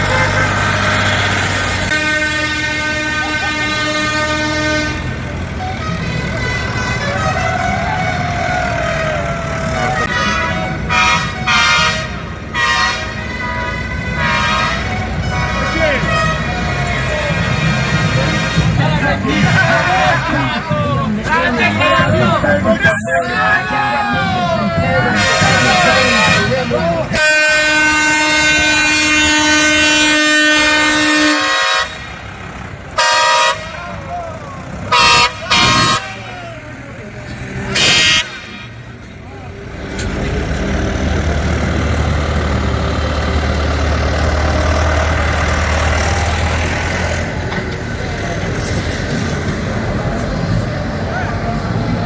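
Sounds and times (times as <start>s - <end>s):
vehicle horn honking: 0.0s - 7.7s, 9.9s - 20.5s, 21.3s - 32.2s, 33.0s - 34.1s, 34.9s - 36.5s, 37.7s - 38.8s
engines rumbling: 0.0s - 52.0s.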